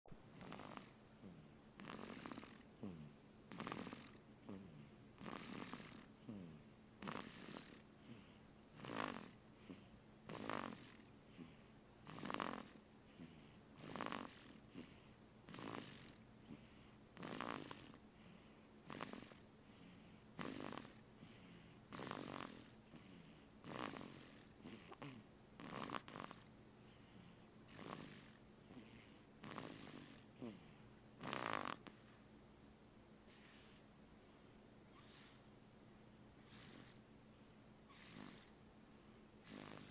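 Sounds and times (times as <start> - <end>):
person snoring: 0.3 - 16.6, 17.2 - 18.0, 18.9 - 19.4, 20.0 - 26.5, 27.7 - 32.1, 34.9 - 35.5, 36.4 - 37.0, 37.9 - 38.5, 39.4 - 39.9.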